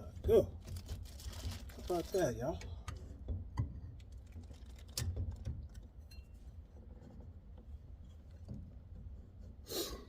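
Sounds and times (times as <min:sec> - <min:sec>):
faint scraping and clinking of parts: 0:00.0 - 0:09.7.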